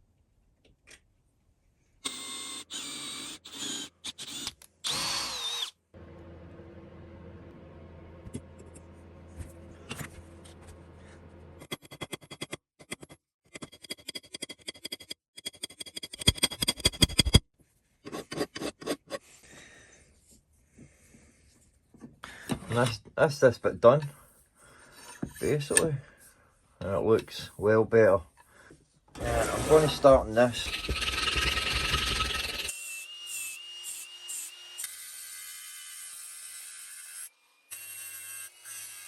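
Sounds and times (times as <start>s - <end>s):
power tool whining: 2.1s - 11.5s, 29.2s - 32.8s.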